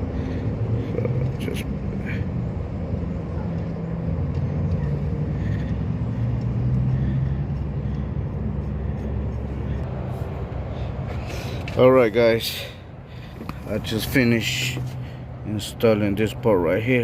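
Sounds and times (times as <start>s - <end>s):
vehicle engine humming: 0.0s - 17.0s.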